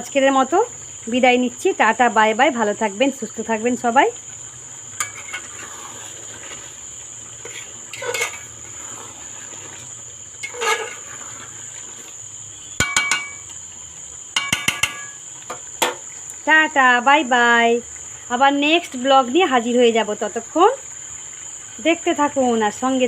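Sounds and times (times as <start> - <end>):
cricket trilling: 0.0 - 23.0
dishes clinking: 5.0 - 5.4, 12.8 - 13.5, 14.4 - 15.2.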